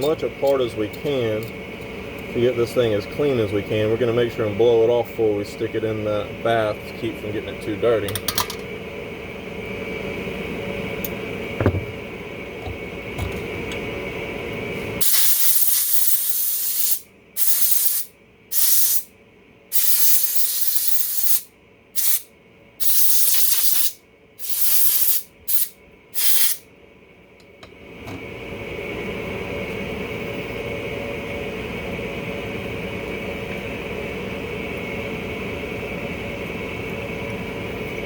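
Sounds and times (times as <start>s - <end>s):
steady background hum: 0.0s - 38.0s
compressed air blow gun hissing: 15.0s - 19.1s, 19.7s - 21.4s, 22.0s - 22.2s, 22.8s - 26.6s.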